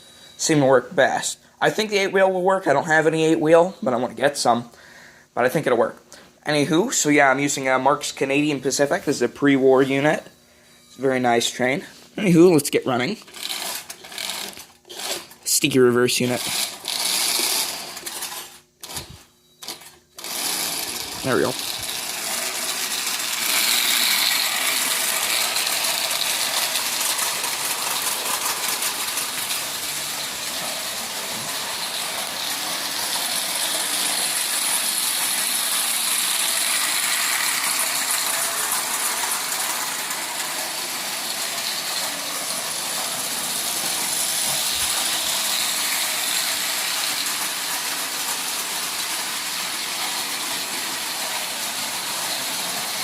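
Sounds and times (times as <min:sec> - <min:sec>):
toy train motor whirring: 0:13.2 - 0:53.0
wheels clattering over rails: 0:16.4 - 0:53.0.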